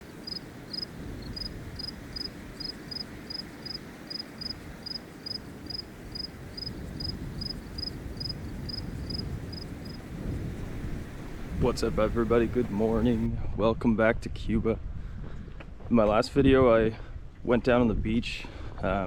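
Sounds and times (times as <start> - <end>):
insect chirping: 0.0 - 10.1
low rumbling noise: 6.0 - 13.6.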